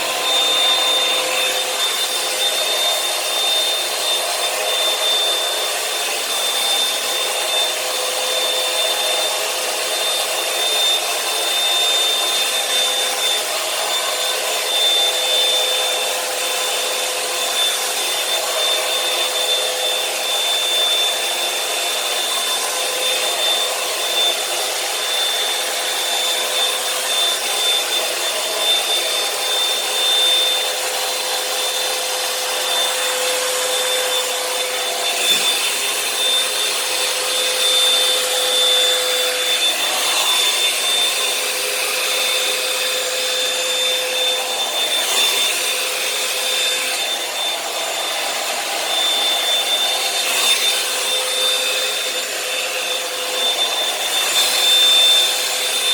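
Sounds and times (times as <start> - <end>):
hair dryer running: 0.0 - 55.9.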